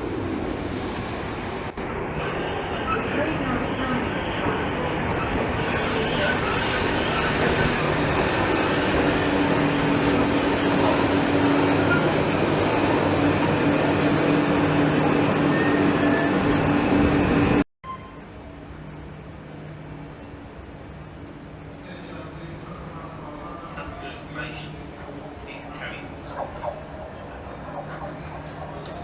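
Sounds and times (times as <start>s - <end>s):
train rumbling: 0.0s - 17.6s, 18.2s - 29.0s
wheel squeals: 5.2s - 13.1s, 14.6s - 18.1s.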